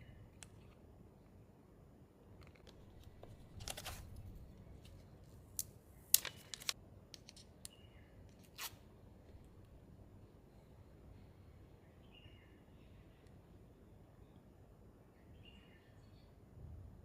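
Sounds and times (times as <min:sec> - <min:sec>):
packaging scraping and tearing: 0:03.0 - 0:04.4.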